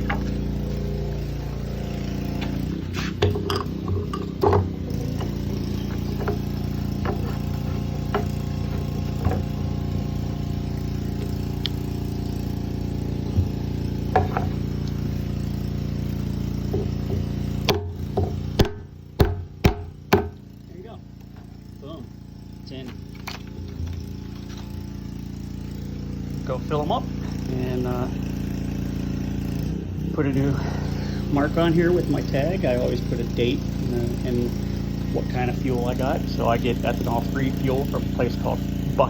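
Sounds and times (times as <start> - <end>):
steady low hum: 0.0 - 39.0
plastic cap clicks and knocks: 3.2 - 4.7.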